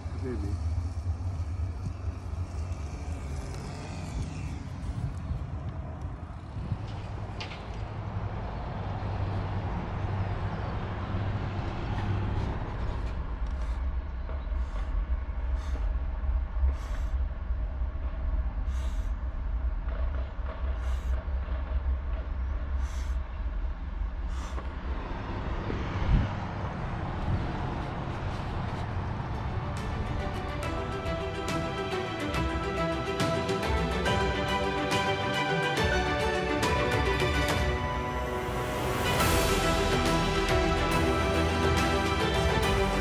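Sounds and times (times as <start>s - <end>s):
steady low rumble: 0.0s - 43.0s
owl chick hissing: 18.7s - 19.1s, 24.3s - 24.7s.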